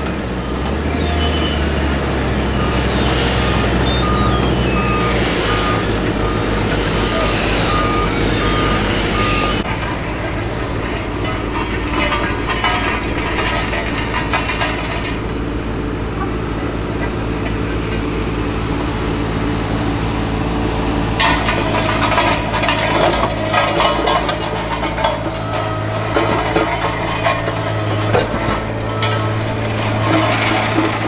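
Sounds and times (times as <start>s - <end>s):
reversing beeper: 0.0s - 10.4s, 19.1s - 31.0s
clanks and knocks: 0.0s - 15.4s, 21.2s - 31.0s
diesel machinery engine running: 0.0s - 31.0s.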